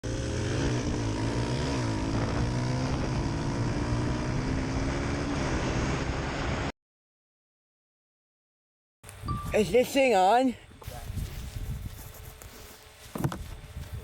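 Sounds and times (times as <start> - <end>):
dirt bike engine revving: 0.0 - 6.7.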